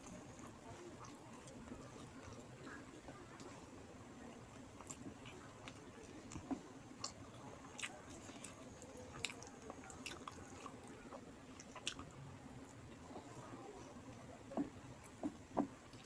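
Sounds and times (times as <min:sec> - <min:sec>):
person chewing food: 0:00.0 - 0:03.6, 0:04.4 - 0:13.3.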